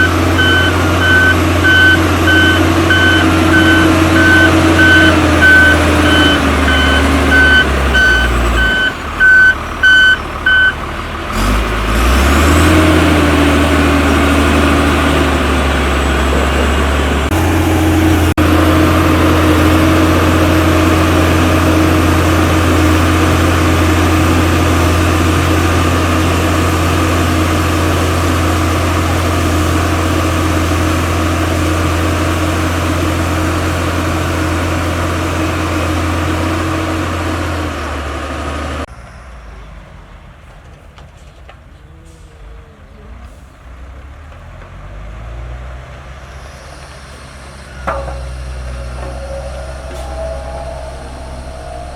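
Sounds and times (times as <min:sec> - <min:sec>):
reversing alarm beeping: 0:00.0 - 0:10.8, 0:47.5 - 0:51.9
heavy machine engine running: 0:00.0 - 0:38.9, 0:44.6 - 0:51.9.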